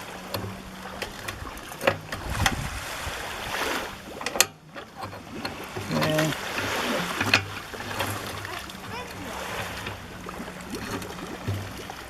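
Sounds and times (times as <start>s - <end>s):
pump housing clicks and knocks: 0.0s - 2.8s, 3.9s - 12.0s
steady rushing noise: 0.0s - 4.7s.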